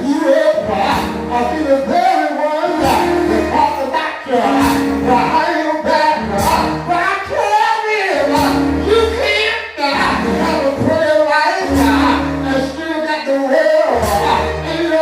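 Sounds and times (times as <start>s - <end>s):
bass notes: 0.0s - 2.0s, 2.7s - 7.4s, 8.2s - 13.0s, 13.9s - 15.0s
voices singing gospel: 0.0s - 15.0s
drum hits: 4.5s - 5.3s, 6.4s - 6.9s, 8.3s - 8.8s, 11.7s - 12.4s, 14.0s - 14.7s.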